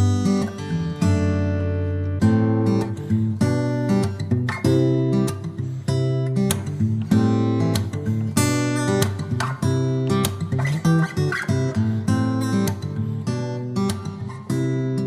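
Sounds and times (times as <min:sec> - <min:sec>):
acoustic guitar strumming chords: 0:00.0 - 0:15.0.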